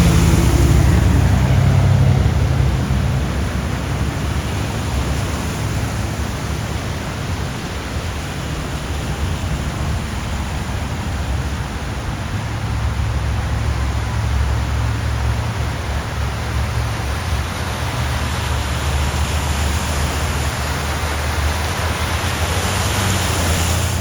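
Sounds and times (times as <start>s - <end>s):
low rumble: 0.0s - 5.9s
rain and water rushing: 0.0s - 24.0s.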